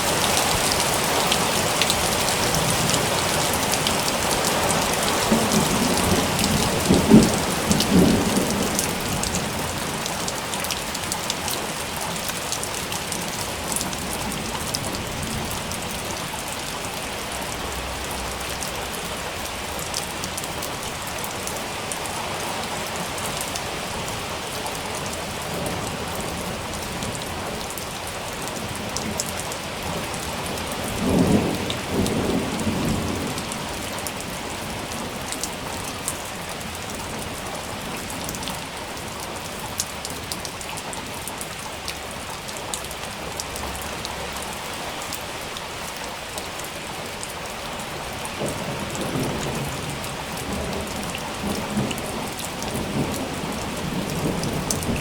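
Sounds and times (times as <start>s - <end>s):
steady rain falling: 0.0s - 55.0s
low rolls of thunder: 5.1s - 10.0s, 29.8s - 35.2s, 48.4s - 55.0s.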